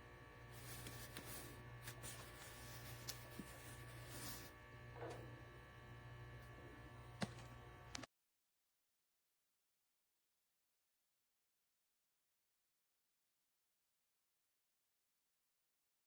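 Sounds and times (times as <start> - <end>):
faint electrical hum: 0.0 - 8.1.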